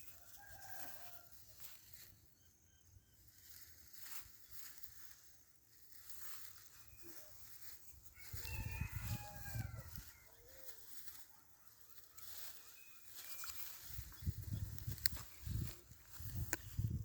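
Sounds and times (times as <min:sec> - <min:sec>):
bird calling: 0:09.8 - 0:14.1.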